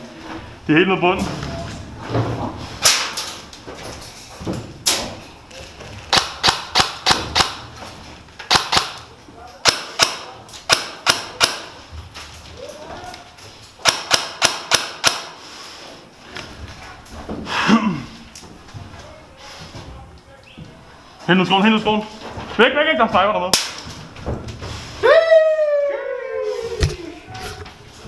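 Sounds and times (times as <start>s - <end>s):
airsoft gun shots: 6.1s - 7.6s, 8.5s - 9.0s, 9.6s - 11.7s, 13.8s - 15.4s.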